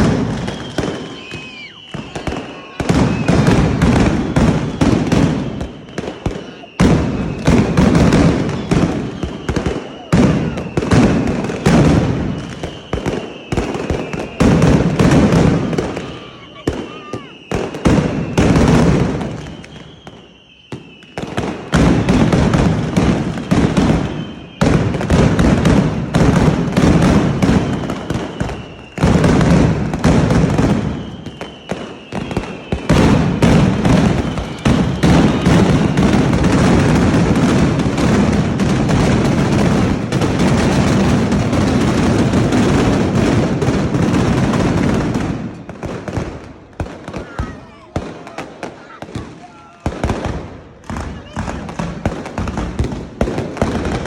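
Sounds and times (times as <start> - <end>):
faint firework whistle: 0.0 - 39.8
firecracker bangs: 0.0 - 54.0.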